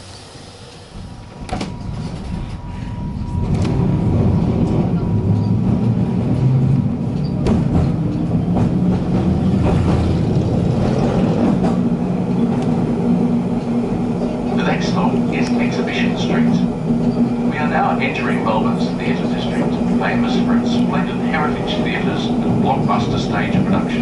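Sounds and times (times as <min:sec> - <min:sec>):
tram rumbling on rails: 0:00.0 - 0:24.0
sharp clicks from tram wheels: 0:04.6 - 0:13.8.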